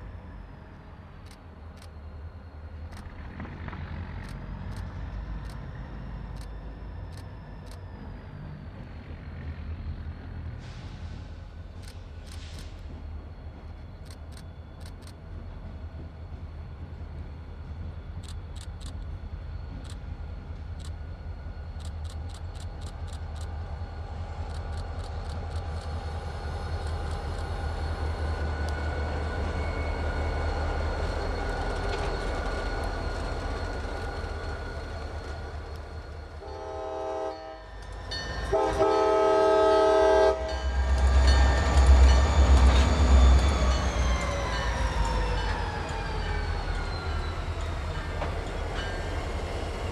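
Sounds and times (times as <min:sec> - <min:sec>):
diesel locomotive engine rumble: 0:00.0 - 0:49.9
locomotive air horn: 0:36.4 - 0:37.7, 0:38.5 - 0:40.7.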